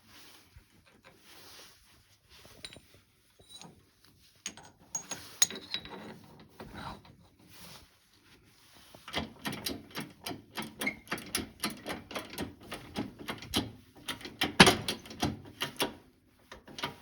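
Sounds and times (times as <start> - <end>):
metal parts rubbing and scraping: 2.4 - 7.2.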